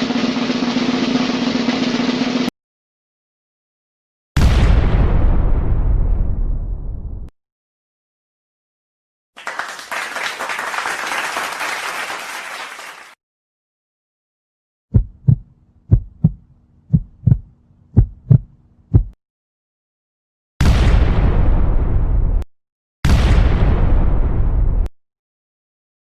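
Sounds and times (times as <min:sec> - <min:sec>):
applause: 0:09.4 - 0:13.2
heartbeat thumps: 0:14.9 - 0:19.2.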